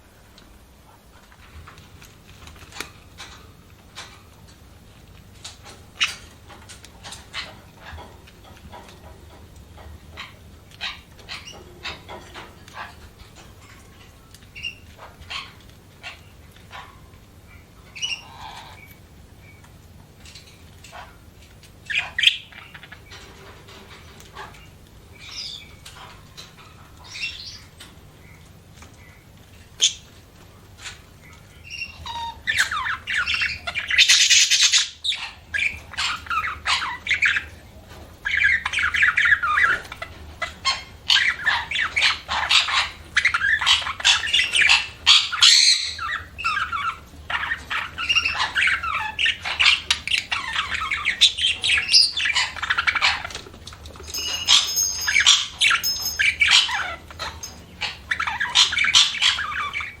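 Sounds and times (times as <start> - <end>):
budgerigars chirping and squawking: 7.0 - 8.2, 10.1 - 13.0, 14.6 - 19.6, 21.9 - 28.4, 30.8 - 37.6, 38.2 - 53.4, 54.1 - 60.0.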